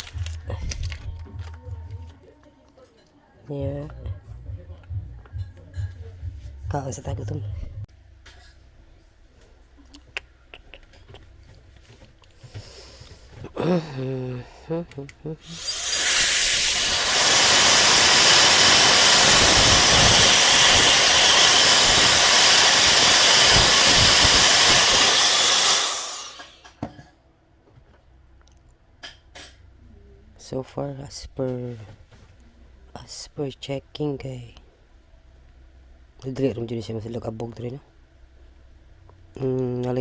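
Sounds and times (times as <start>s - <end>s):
electric blower rushing air: 15.4s - 26.6s.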